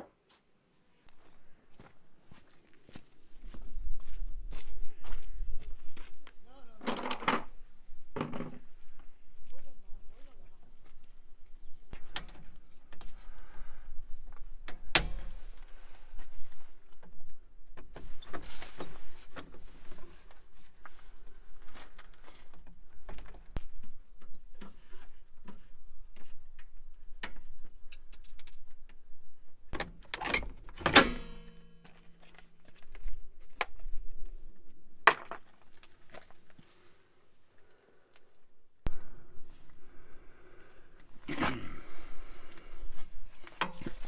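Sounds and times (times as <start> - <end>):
loud ringing clank: 30.9 - 31.9.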